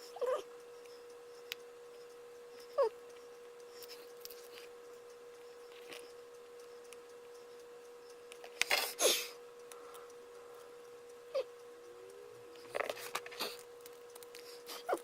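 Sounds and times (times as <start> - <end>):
steady faint tone: 9.3 - 15.0
high whine falling in pitch: 11.2 - 12.6.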